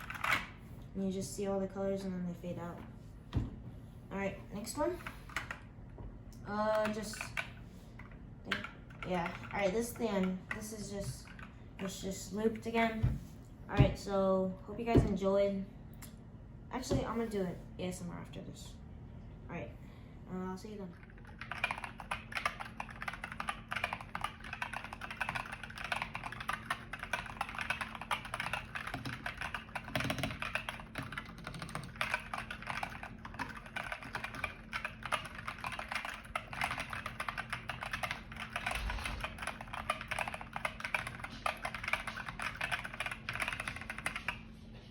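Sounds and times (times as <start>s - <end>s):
fast typing on mechanical keyboard: 0.0s - 0.5s, 6.8s - 11.5s, 21.0s - 44.4s.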